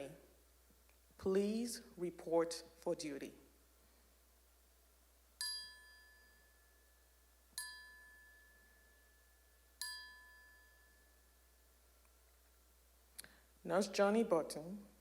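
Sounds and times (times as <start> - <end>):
bell ringing: 5.4 - 11.4.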